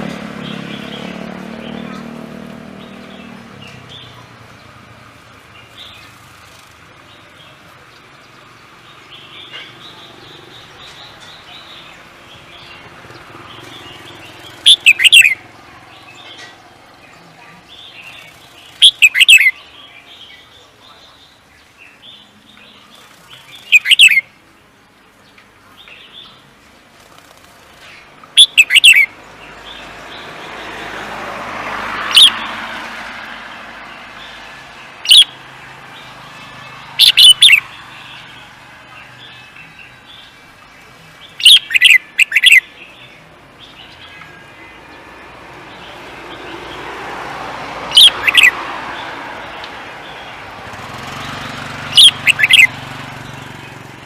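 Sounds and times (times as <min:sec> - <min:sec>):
broad rush of noise: 0:00.0 - 0:54.0
songbird singing: 0:00.0 - 0:54.0
faint bird chirps: 0:17.8 - 0:24.3, 0:41.3 - 0:44.5, 0:52.0 - 0:52.7.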